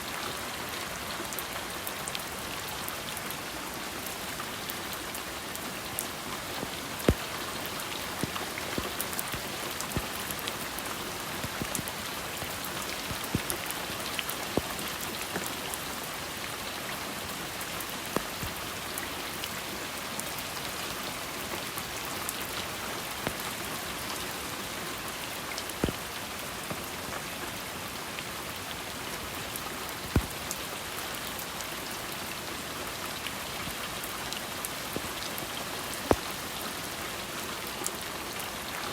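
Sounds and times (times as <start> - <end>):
steady rain hiss: 0.0 - 38.9
drips ticking on a surface: 5.5 - 16.5, 17.8 - 19.6, 21.6 - 27.2.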